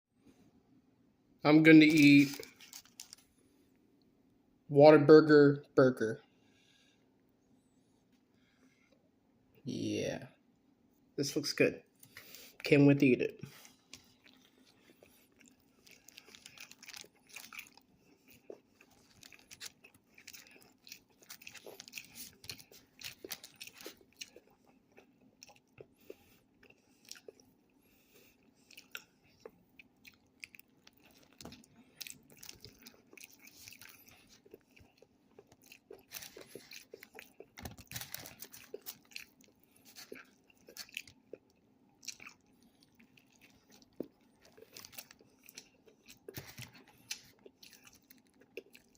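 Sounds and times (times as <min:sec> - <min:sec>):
person chewing a burger: 0:01.8 - 0:04.1, 0:13.5 - 0:48.9.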